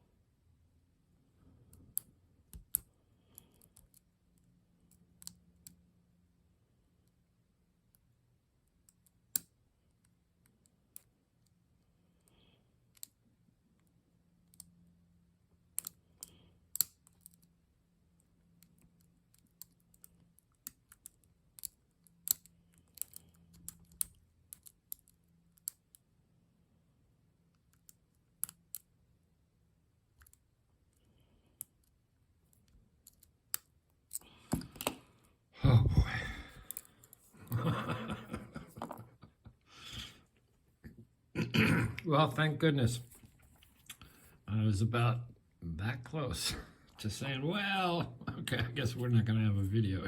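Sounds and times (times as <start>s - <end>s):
lock pick metallic clicks: 15.8s - 17.5s, 18.6s - 25.9s.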